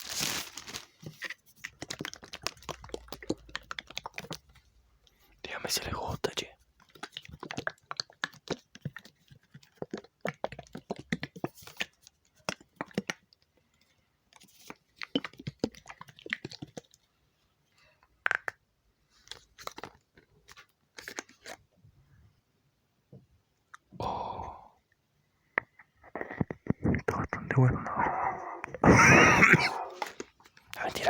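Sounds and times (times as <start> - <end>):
liquid in container crackling clicks: 1.6 - 5.2, 6.8 - 13.3.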